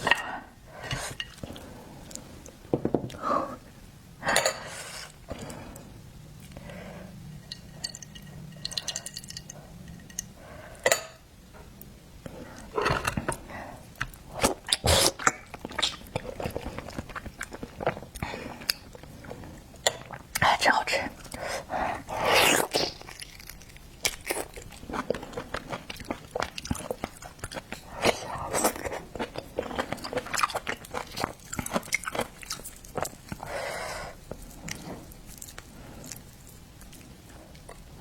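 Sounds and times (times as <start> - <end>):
person chewing food: 12.2 - 20.4, 21.1 - 38.0.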